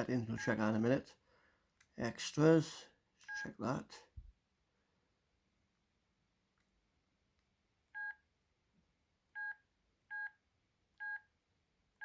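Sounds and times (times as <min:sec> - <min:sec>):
phone keypad beeps: 0:08.0 - 0:08.2, 0:11.0 - 0:11.3.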